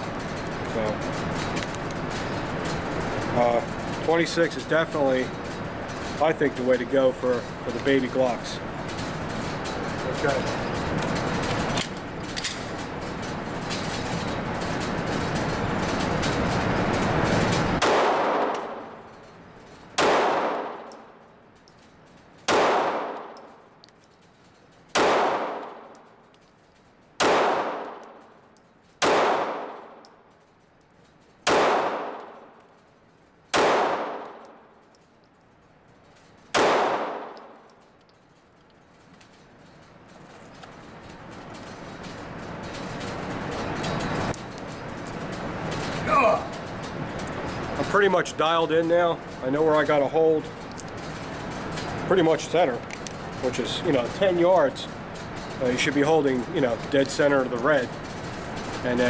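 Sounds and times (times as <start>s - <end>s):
pistol shots echoing indoors: 17.8s - 19.0s, 20.0s - 21.0s, 22.5s - 23.4s, 25.0s - 25.9s, 27.2s - 28.1s, 29.0s - 30.0s, 31.4s - 32.5s, 33.5s - 34.4s, 36.5s - 37.6s.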